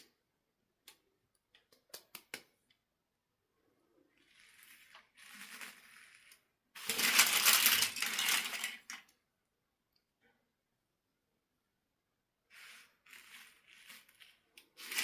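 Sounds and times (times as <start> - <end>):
small hard pieces clattering: 4.2 - 9.2, 12.5 - 15.0.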